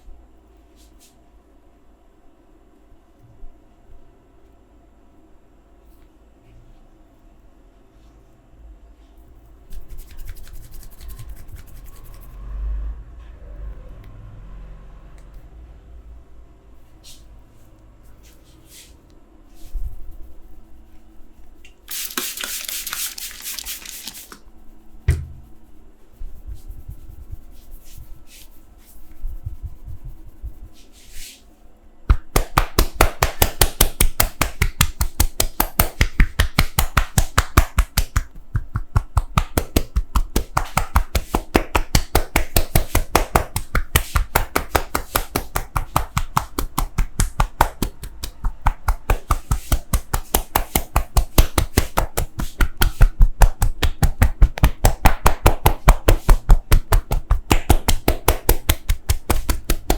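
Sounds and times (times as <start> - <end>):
soft touches: 16.8 - 31.6.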